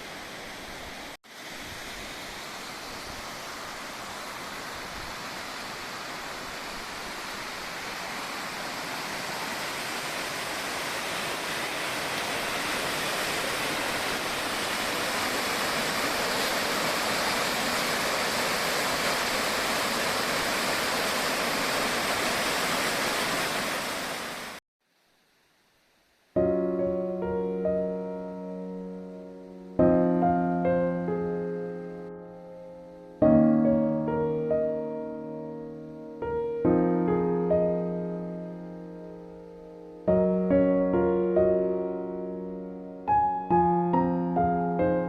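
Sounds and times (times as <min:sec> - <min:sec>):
mountain stream rushing: 0:00.0 - 0:24.6.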